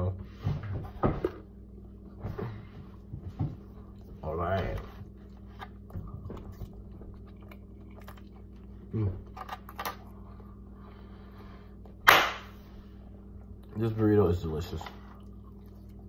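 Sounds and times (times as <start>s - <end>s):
chewing with wet mouth clicks: 5.2s - 9.7s, 14.8s - 16.0s.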